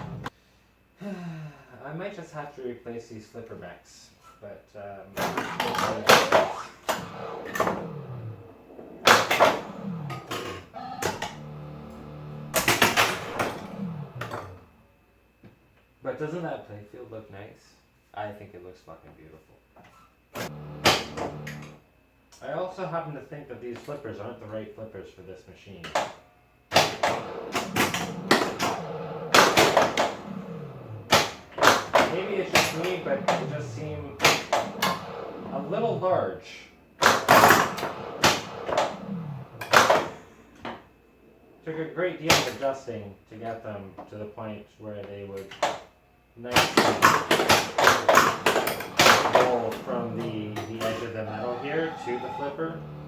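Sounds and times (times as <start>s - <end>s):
alternating two-tone buzz: 0.0s - 0.4s, 5.2s - 14.9s, 20.3s - 21.9s, 26.6s - 44.0s, 46.7s - 53.0s
pinball flipper and ball clacks: 5.2s - 14.6s, 20.4s - 21.8s, 26.7s - 35.9s, 37.0s - 40.8s, 46.6s - 53.0s
electronic falling-pitch tones: 5.5s - 14.9s, 26.8s - 41.6s, 47.7s - 53.0s.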